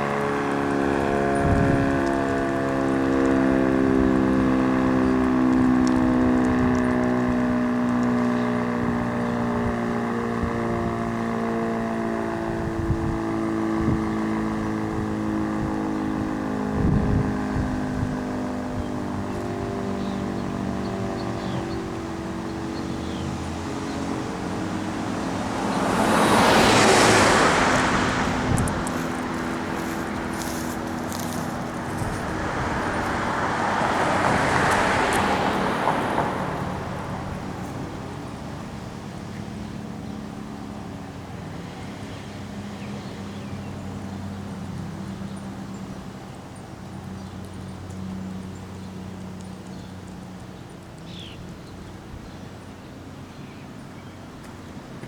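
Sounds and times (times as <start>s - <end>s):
tornado siren winding down: 0.0s - 39.3s
car passing by: 20.1s - 44.4s.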